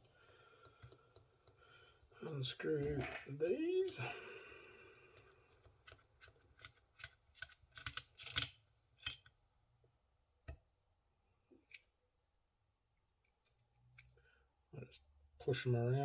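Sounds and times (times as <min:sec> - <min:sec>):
metallic clicks unscrewing bolts: 0:05.8 - 0:09.3.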